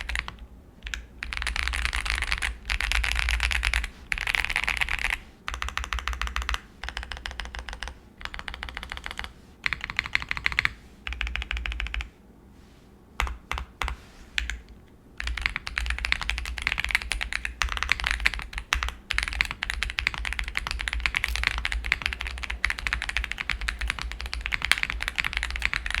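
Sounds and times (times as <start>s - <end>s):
mechanical keyboard typing: 0.0s - 12.1s, 13.2s - 26.0s.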